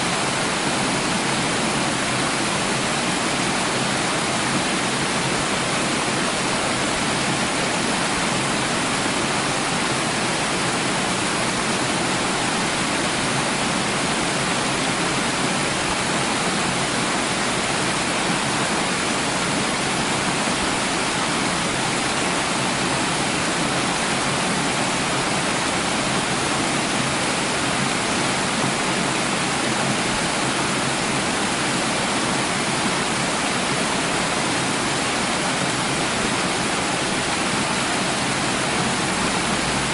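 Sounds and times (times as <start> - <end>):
running water rushing: 0.0 - 39.9.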